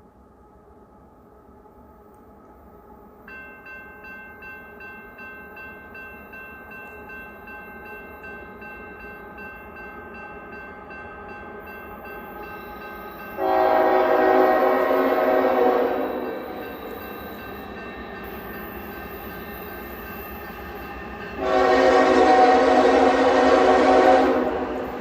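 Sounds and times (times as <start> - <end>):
passing train rumble: 0.0 - 25.0
crossing bell dinging: 3.2 - 25.0
train horn blowing: 13.4 - 16.6, 21.4 - 25.0.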